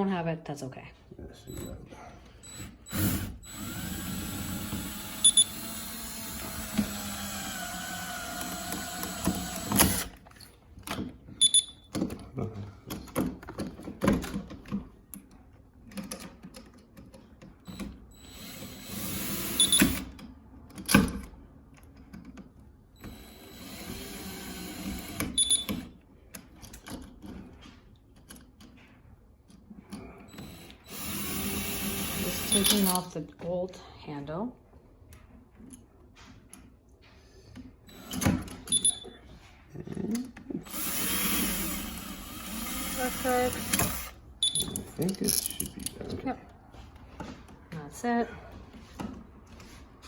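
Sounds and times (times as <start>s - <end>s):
power drill running: 2.4s - 10.2s, 18.2s - 20.1s, 23.0s - 25.8s, 30.3s - 33.0s, 37.9s - 38.7s, 40.6s - 44.2s
metal hardware clicks and knocks: 44.4s - 46.2s.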